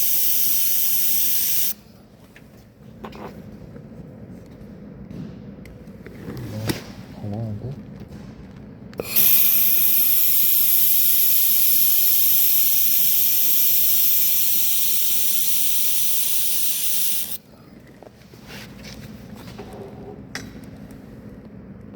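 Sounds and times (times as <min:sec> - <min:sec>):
welding torch hissing: 0:00.0 - 0:01.8, 0:09.0 - 0:17.4.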